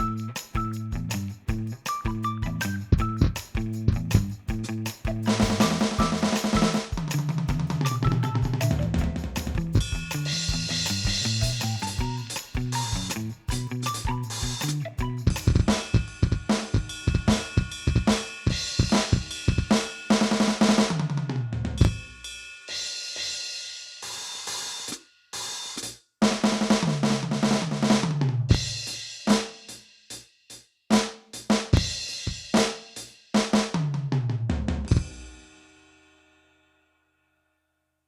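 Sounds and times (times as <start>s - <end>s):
electronic drum beat: 0.0s - 16.0s.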